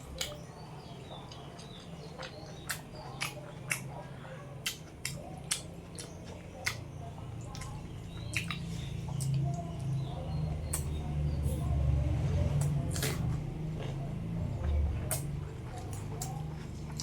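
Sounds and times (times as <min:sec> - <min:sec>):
close chewing: 0:00.0 - 0:17.0.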